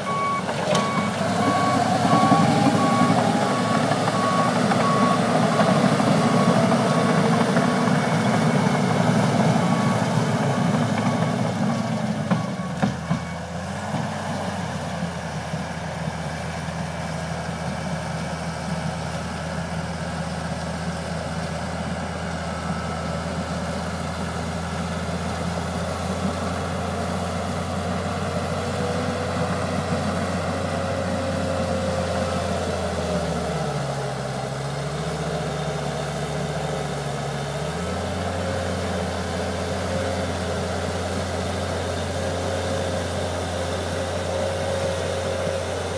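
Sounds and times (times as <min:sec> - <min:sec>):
diesel engine running and idling: 0:00.0 - 0:45.9
backup alarm beeping: 0:00.1 - 0:07.0.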